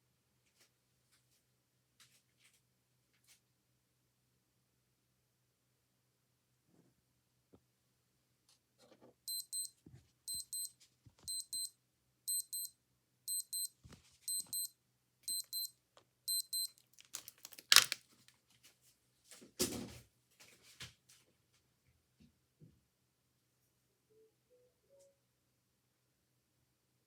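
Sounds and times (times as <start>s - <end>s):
digital watch alarm beeping: 9.3s - 9.7s, 10.3s - 10.7s, 11.3s - 11.7s, 12.3s - 12.7s, 13.3s - 13.7s, 14.3s - 14.7s, 15.3s - 15.7s, 16.3s - 16.7s
rustling handling noise: 16.6s - 19.4s.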